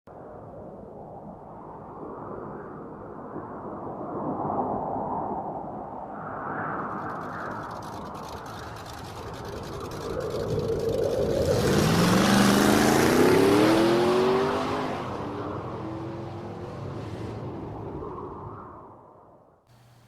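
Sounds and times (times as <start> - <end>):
car engine accelerating: 6.9 - 17.9.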